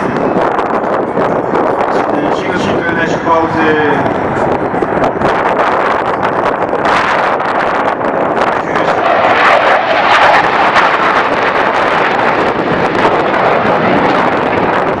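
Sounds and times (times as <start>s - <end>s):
jet engine roar: 0.0s - 15.0s.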